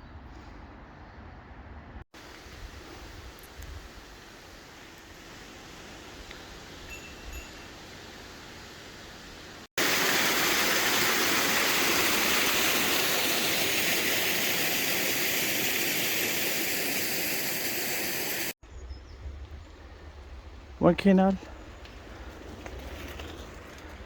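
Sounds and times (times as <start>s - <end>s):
faint outdoor background: 0.0s - 9.9s, 18.6s - 24.0s
rushing water pouring: 9.8s - 18.6s.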